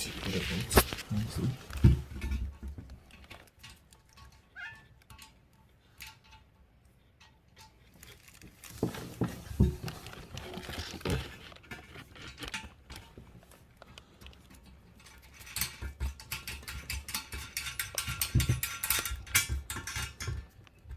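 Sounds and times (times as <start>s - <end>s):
heavier knocks and thumps: 0.7s - 2.9s
clinks of bolts and washers: 14.5s - 20.9s.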